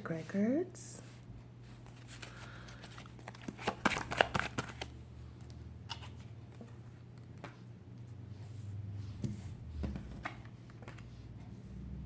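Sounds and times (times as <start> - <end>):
cards being shuffled: 1.8 - 7.7, 9.2 - 11.6.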